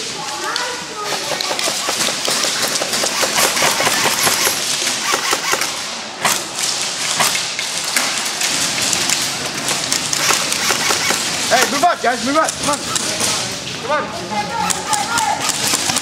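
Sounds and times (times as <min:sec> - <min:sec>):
airsoft guns firing: 0:01.0 - 0:11.9, 0:14.6 - 0:16.0.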